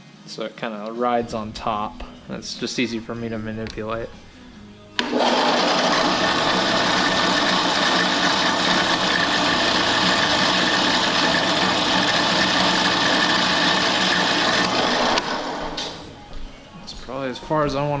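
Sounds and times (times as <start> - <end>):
drill press motor hum: 5.0 - 16.1.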